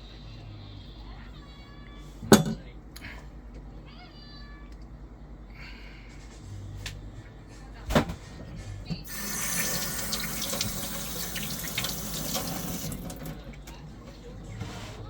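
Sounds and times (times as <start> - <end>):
water running into sink: 9.0 - 13.6.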